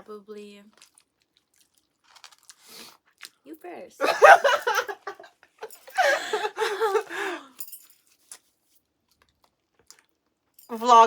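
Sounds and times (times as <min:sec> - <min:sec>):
person laughing loudly: 0:04.0 - 0:07.5.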